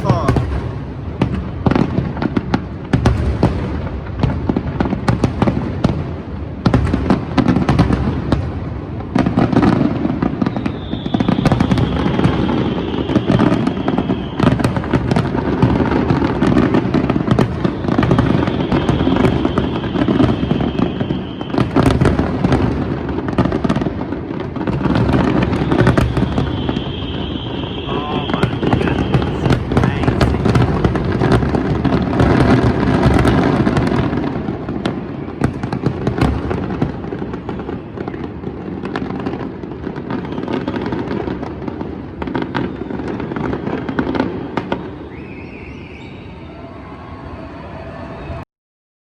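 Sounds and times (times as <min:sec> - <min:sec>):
fireworks bursts and crackling: 0:00.0 - 0:45.1
fireworks high whistling: 0:25.6 - 0:30.9.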